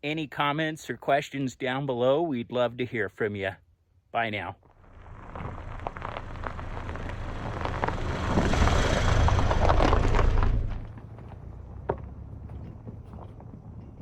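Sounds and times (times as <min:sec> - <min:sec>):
vehicle engine driving past: 0:04.8 - 0:14.0.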